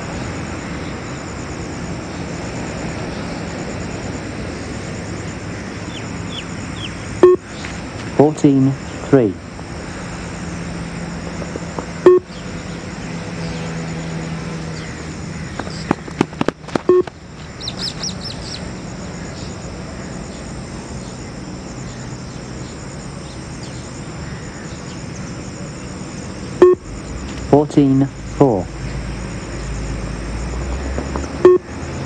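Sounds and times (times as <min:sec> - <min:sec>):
low hum: 0:00.0 - 0:31.8
high chirping: 0:05.7 - 0:07.8, 0:16.9 - 0:19.6
short electronic beeps: 0:07.2 - 0:07.4, 0:12.0 - 0:12.3, 0:16.9 - 0:17.1, 0:26.6 - 0:26.8, 0:31.4 - 0:31.7.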